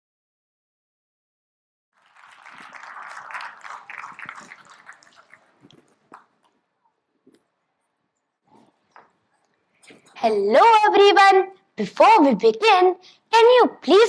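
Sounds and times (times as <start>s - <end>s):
audience applause: 2.0s - 6.4s.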